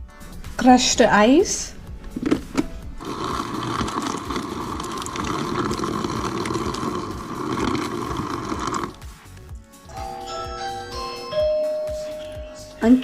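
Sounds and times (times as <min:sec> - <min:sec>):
ice dispenser whirring: 0:03.0 - 0:09.0
ice rattling: 0:03.0 - 0:09.0.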